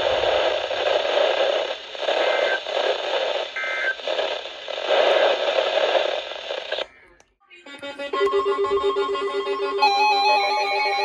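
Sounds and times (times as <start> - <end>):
radio static hiss: 0.0 - 7.2.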